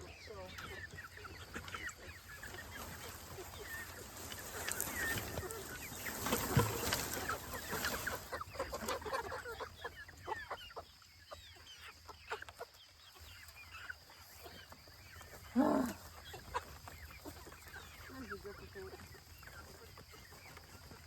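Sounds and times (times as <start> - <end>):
young chickens clucking and chirping: 0.0 - 21.0
loud low chicken call: 15.5 - 16.0.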